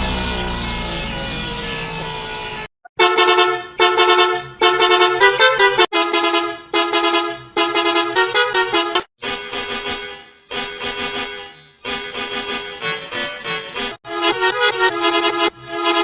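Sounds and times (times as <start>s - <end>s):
bus horn blasts: 3.0s - 15.4s.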